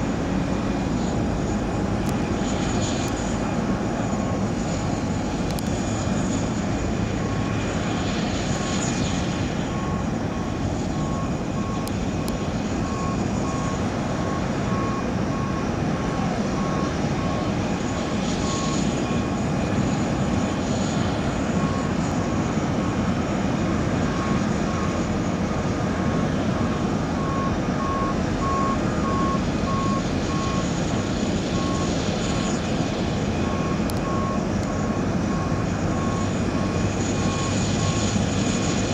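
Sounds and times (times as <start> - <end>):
jet engines droning: 0.0 - 38.9
electronic warning beeps: 27.2 - 30.7.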